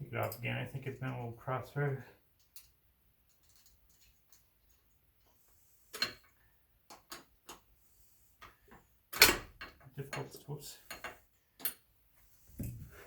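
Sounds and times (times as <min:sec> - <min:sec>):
tools and metal hardware clicking: 0:02.4 - 0:05.0.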